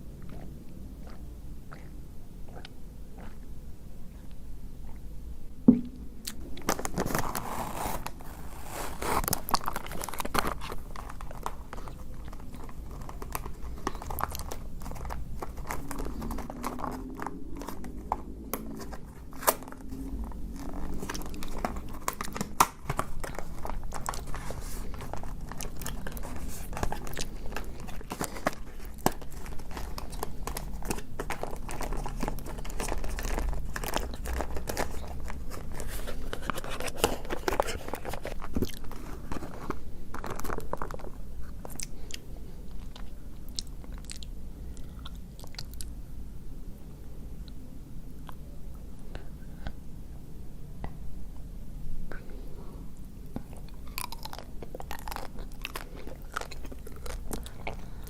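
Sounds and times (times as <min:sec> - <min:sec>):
crunching ice cream bar: 0:06.3 - 0:45.9, 0:53.3 - 0:58.0.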